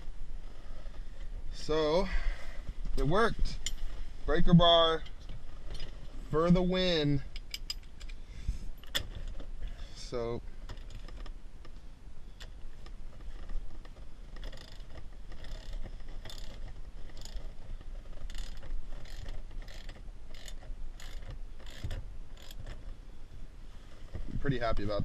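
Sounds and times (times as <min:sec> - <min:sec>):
hand ratchet clicking: 0:14.3 - 0:22.8.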